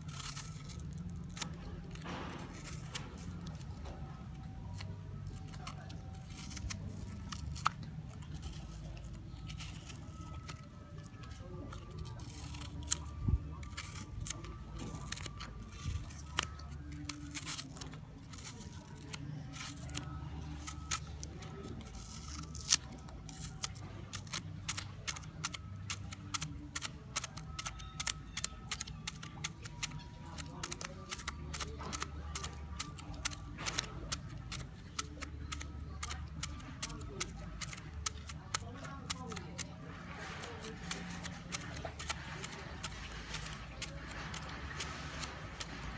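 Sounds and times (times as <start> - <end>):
fingernails tapping on apple skin: 12.0 - 45.9.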